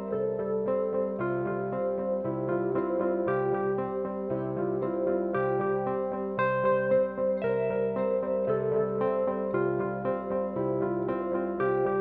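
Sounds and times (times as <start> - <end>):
soft synthesizer notes: 0.0 - 12.0.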